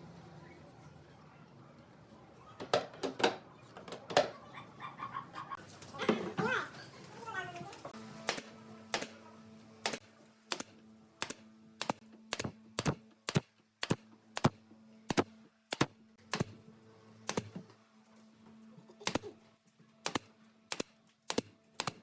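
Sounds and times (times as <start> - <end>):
sharp taps: 9.9 - 16.5.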